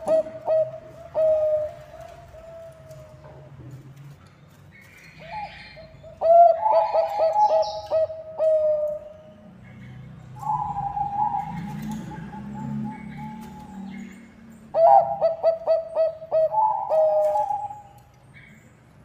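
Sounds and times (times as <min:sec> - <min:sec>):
dove cooing: 0:00.0 - 0:03.7, 0:05.2 - 0:09.4, 0:10.4 - 0:14.0, 0:14.7 - 0:17.9.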